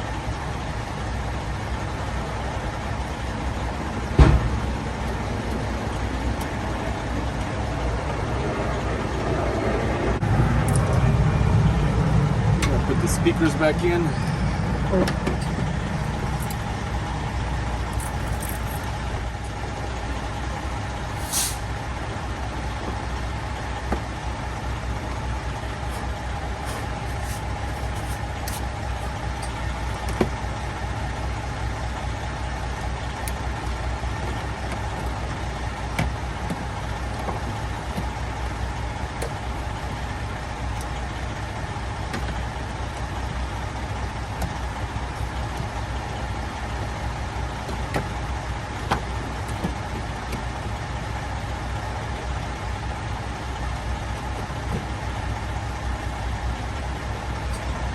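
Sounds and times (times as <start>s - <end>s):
truck engine idling: 0.0s - 57.9s.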